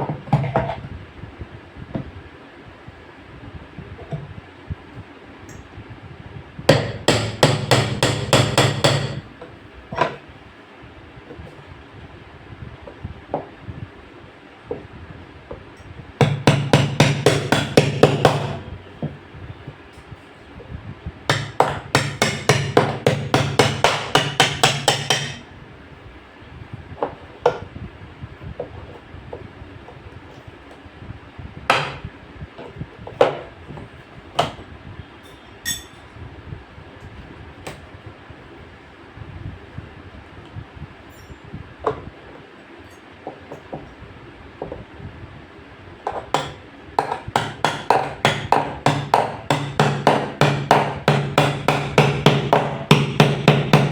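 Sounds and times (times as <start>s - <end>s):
metallic clink: 35.2s - 36.0s, 41.1s - 41.4s.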